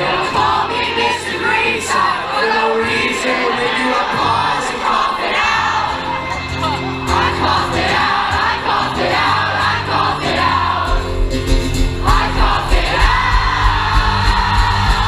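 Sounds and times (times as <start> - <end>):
crowd voices: 0.0 - 15.0
live rock band with singing: 0.0 - 15.0
heavy kick drum beat: 10.9 - 15.0.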